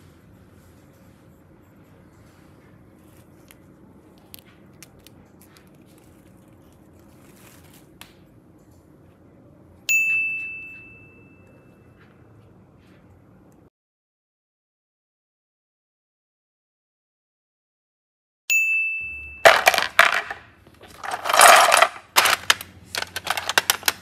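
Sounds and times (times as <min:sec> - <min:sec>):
bright bell ding: 0:09.9 - 0:11.9, 0:18.5 - 0:19.5.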